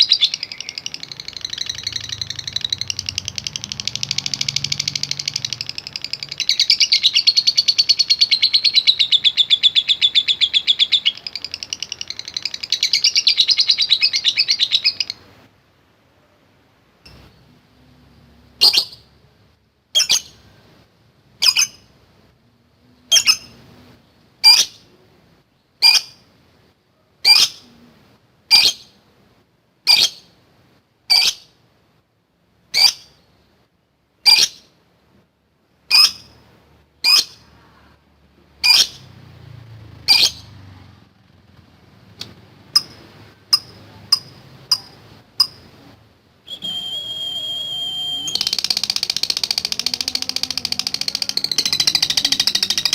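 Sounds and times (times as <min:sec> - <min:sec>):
bird shrill calls: 0:00.0 - 0:15.2, 0:46.5 - 0:52.9
steady high tone: 0:46.5 - 0:52.9.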